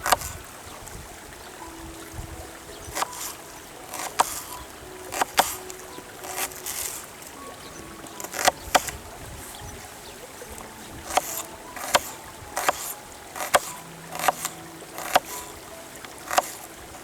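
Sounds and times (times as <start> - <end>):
sharp knocks and clicks: 0.0 - 0.4, 2.9 - 4.5, 8.2 - 9.0, 11.1 - 16.7.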